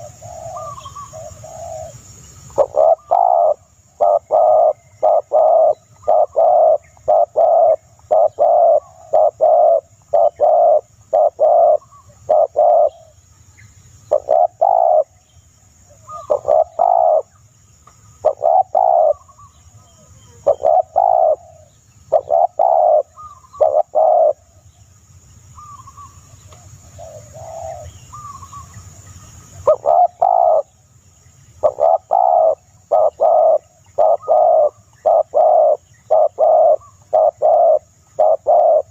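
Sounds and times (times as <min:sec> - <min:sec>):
bird calling in hollow low notes: 0:31.6 - 0:38.9.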